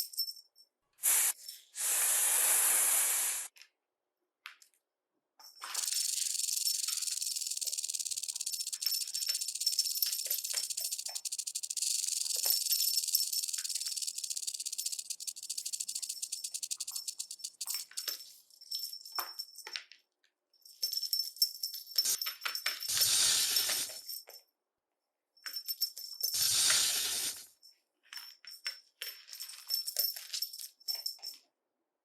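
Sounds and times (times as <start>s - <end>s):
snake hissing rattle: 1.0s - 3.5s, 5.8s - 18.0s, 22.9s - 24.0s, 26.3s - 27.4s.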